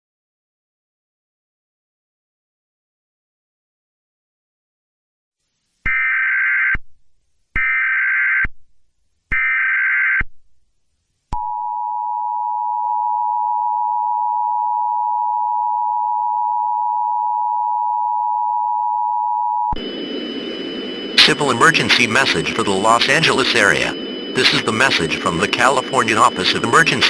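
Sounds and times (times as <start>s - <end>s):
two-tone alert signal: 11.5s - 27.0s
screeching digital data bursts: 19.8s - 27.0s.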